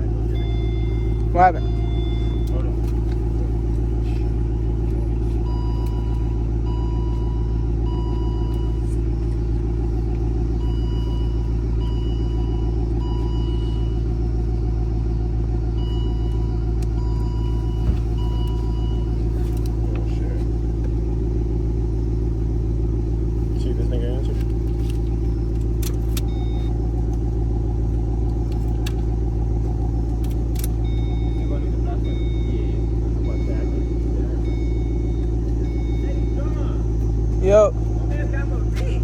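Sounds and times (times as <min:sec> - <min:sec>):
vehicle engine rumbling: 0:00.0 - 0:39.0
short electronic beeps: 0:00.2 - 0:03.0, 0:05.4 - 0:08.9, 0:10.6 - 0:14.0, 0:15.8 - 0:19.2, 0:26.2 - 0:26.8, 0:30.8 - 0:36.8.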